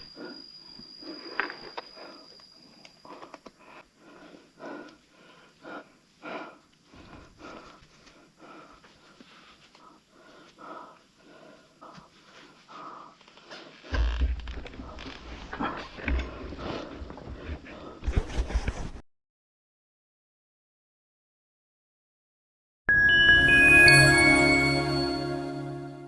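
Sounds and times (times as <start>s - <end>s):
person breathing hard: 0.0s - 18.2s.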